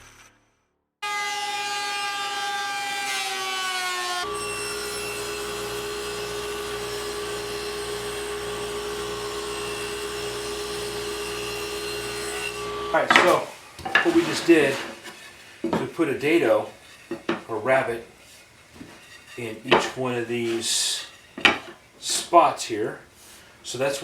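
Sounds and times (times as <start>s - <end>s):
power saw whining: 1.0s - 15.6s.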